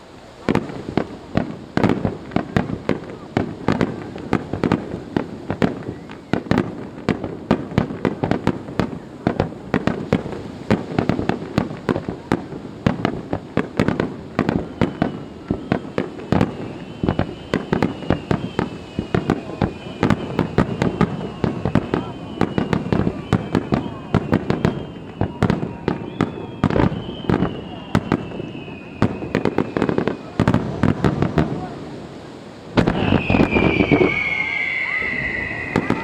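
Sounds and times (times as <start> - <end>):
firework bangs: 0.4 - 36.0
rumble of explosions: 32.8 - 36.0.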